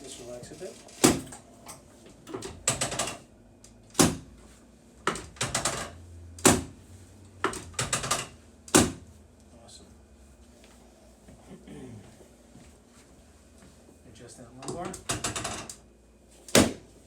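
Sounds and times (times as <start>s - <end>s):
chiropractic joint clicks and knocks: 14.6s - 15.8s.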